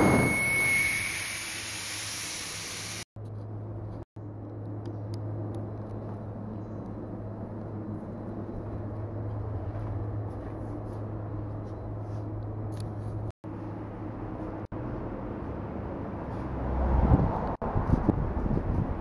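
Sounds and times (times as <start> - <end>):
low machine hum: 3.2 - 16.1.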